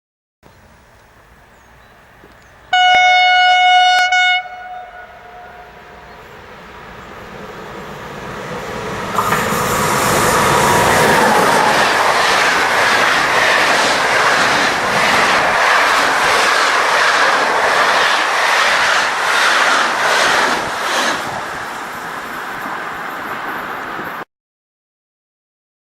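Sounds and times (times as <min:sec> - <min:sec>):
train wheels clattering: 0:08.6 - 0:24.2.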